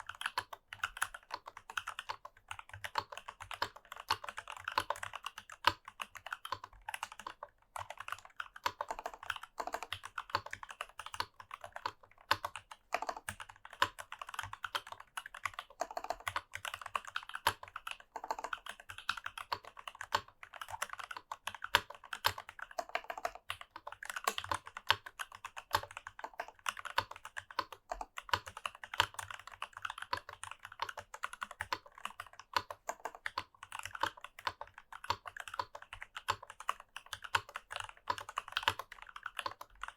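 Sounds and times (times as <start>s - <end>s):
fast typing on mechanical keyboard: 0.0s - 39.9s.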